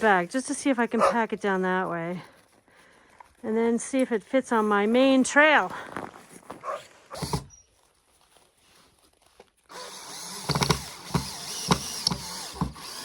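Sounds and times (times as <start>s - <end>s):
cordless drill driving screws: 7.1s - 7.6s, 9.7s - 13.0s.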